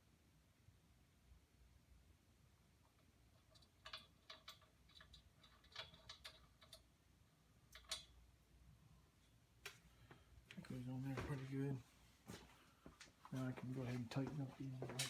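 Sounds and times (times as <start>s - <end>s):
small metal parts clinking: 3.4s - 6.9s.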